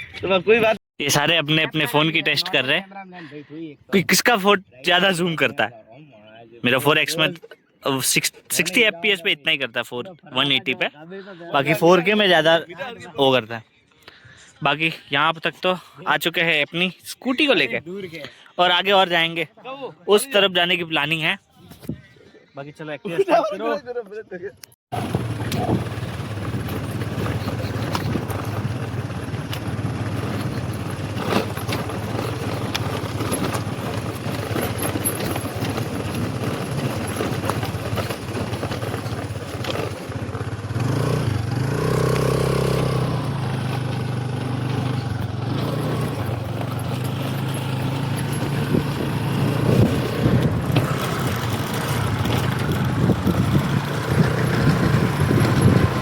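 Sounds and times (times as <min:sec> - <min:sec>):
scooter engine droning: 0:25.0 - 0:56.0.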